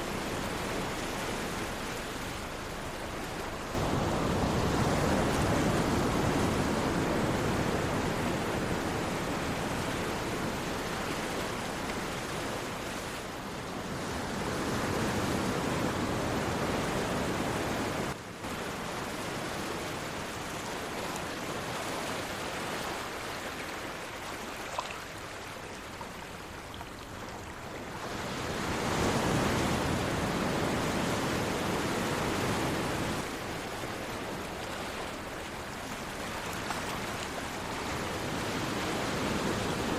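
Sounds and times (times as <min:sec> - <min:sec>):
sea surf washing ashore: 0:00.0 - 0:39.9.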